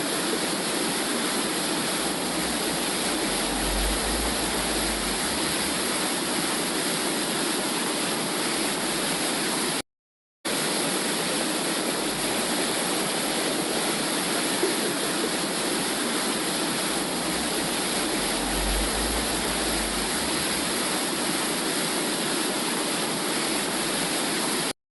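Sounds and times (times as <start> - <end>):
steady whooshing womb sound: 1.4 - 7.3, 14.6 - 21.7.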